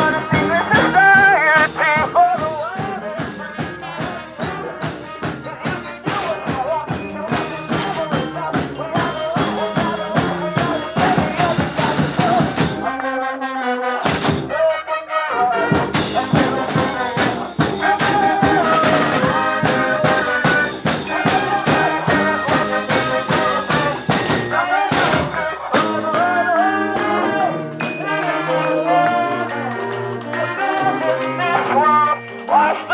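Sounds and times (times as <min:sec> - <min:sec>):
drum beat: 0:00.0 - 0:13.0, 0:15.8 - 0:28.0
brass band playing: 0:00.0 - 0:32.9.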